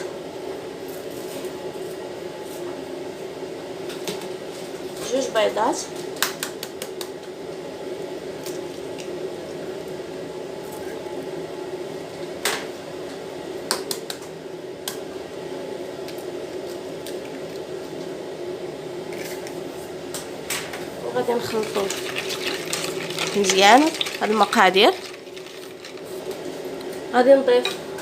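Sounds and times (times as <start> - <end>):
steady low hum: 0.0 - 28.0
wet squishing of liquid: 21.4 - 26.5.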